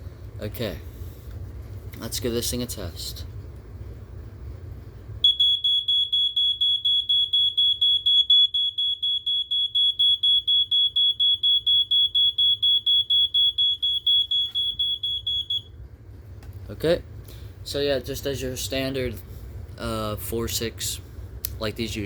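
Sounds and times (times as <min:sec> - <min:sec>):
smoke alarm beeping: 0:05.2 - 0:15.8.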